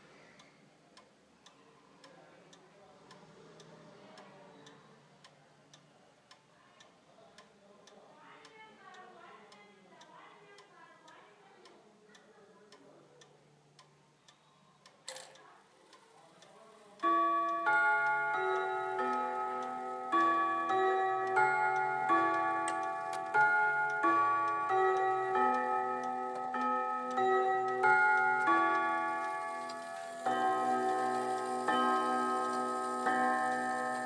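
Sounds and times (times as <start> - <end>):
clock ticking softly: 0.4 - 34.0
clock chimes playing a melody: 17.0 - 34.0
sharp clock click: 17.0 - 34.0.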